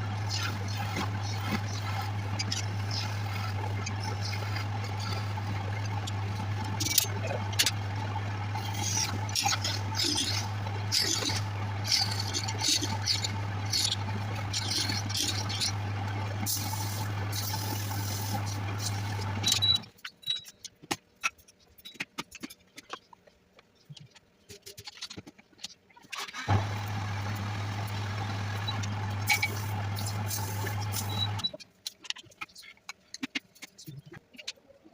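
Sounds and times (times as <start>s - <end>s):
wood lathe humming: 0.0s - 19.6s, 26.5s - 31.4s
turning tool cutting wood: 0.0s - 19.8s, 26.4s - 31.5s.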